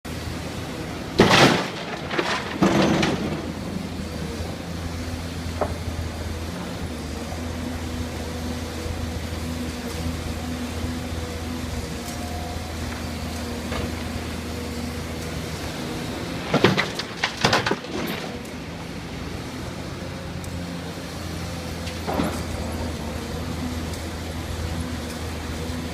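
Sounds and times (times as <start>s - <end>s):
loud clanks and knocks: 1.2s - 3.7s, 16.5s - 18.5s.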